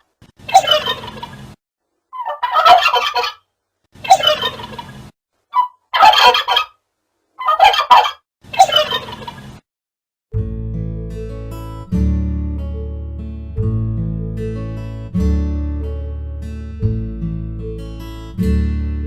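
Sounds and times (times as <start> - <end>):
turkey gobbling: 0.5 - 1.4, 2.2 - 3.5, 4.1 - 6.8, 7.4 - 9.4.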